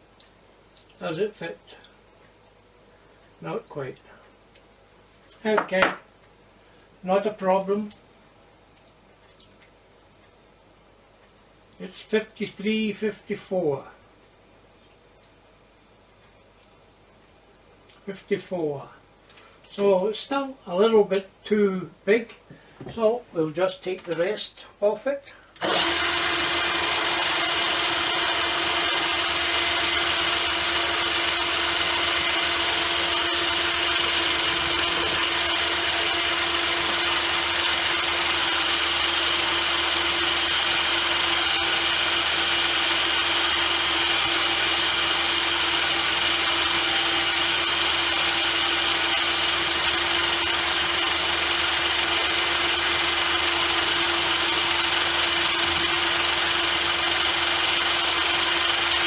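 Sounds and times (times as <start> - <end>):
electric grinder motor whine: 25.6 - 59.0.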